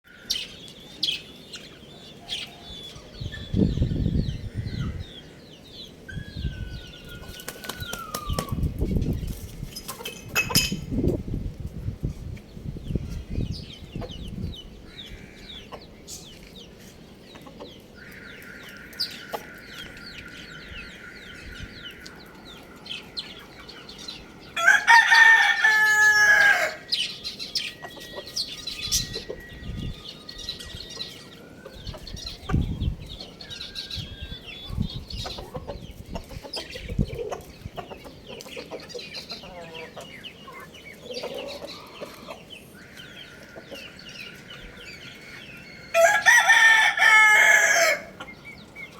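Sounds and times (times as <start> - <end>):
small birds chirping: 0.1 - 48.9
rooster crowing: 24.5 - 27.0, 42.8 - 48.2.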